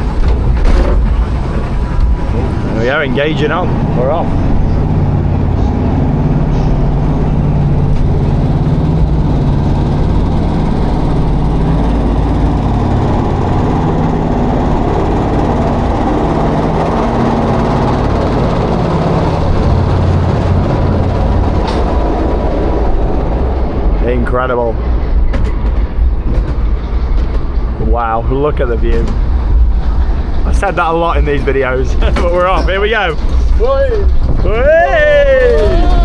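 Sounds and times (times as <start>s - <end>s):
lift drive rumble and hum: 0.0s - 36.0s.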